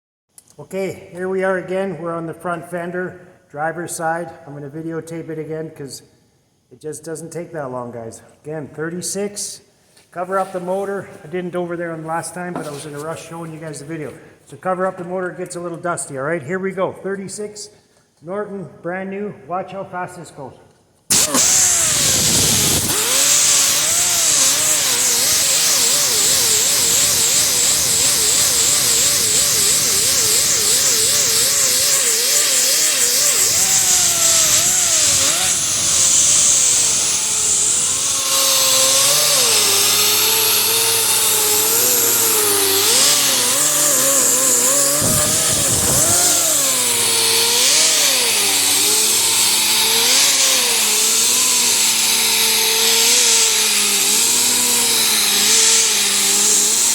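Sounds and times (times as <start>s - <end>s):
power sander grinding steel: 21.1s - 56.9s
sander motor whine: 21.1s - 56.9s.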